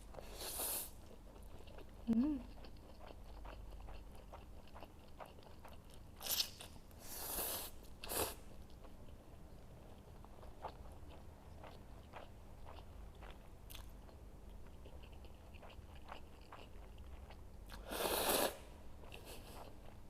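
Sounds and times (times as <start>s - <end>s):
chewing noodles: 0.1s - 20.0s
person humming: 2.1s - 2.5s.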